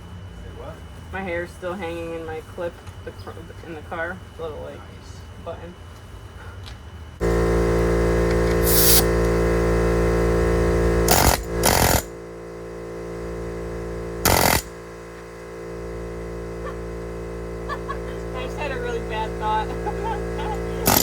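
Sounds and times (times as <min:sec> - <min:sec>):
air hiss bursts: 0:07.2 - 0:21.0
impact wrench buzzing: 0:07.2 - 0:21.0.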